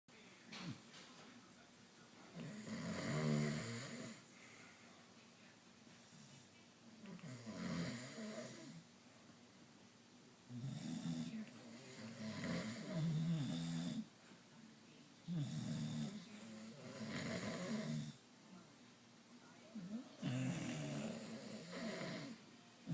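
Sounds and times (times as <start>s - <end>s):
loud rattling snores: 2.4s - 4.2s, 7.2s - 8.8s, 10.6s - 14.0s, 15.3s - 18.2s, 20.2s - 22.4s.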